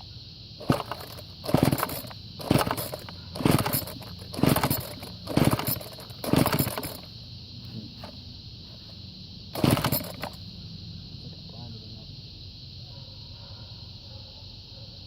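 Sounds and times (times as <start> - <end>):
recoil starter rope pulls: 0.6 - 7.1, 9.6 - 10.4.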